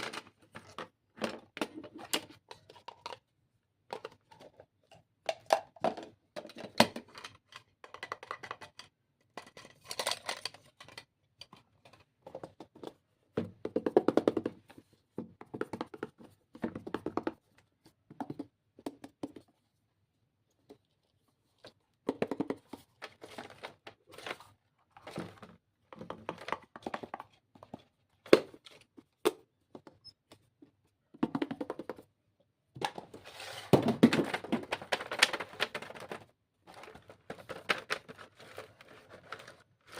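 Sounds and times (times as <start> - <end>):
stationery packaging clicks and taps: 15.2 - 17.5, 33.7 - 39.6.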